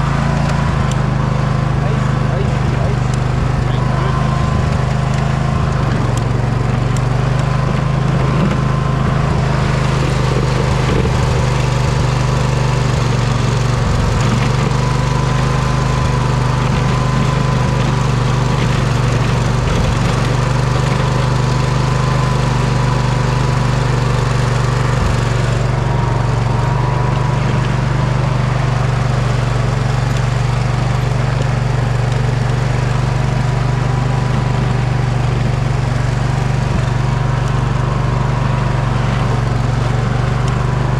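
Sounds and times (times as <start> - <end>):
riding mower engine running: 0.0 - 40.9.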